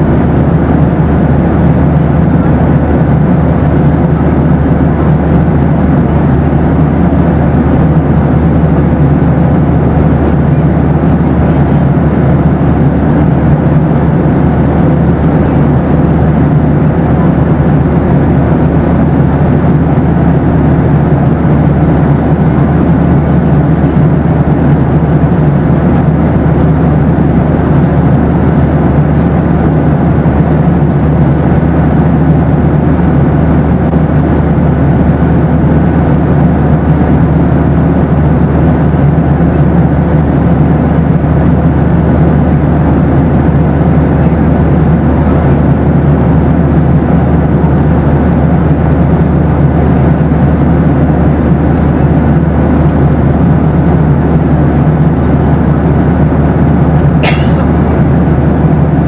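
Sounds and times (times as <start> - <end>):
airplane cabin rumble: 0.0 - 59.0
faint steady hum: 51.2 - 59.0.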